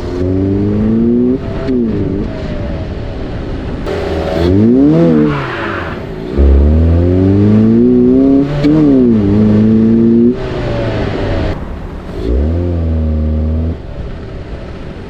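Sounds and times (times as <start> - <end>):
car engine accelerating hard: 0.0 - 15.0
air intake rush: 3.9 - 13.8.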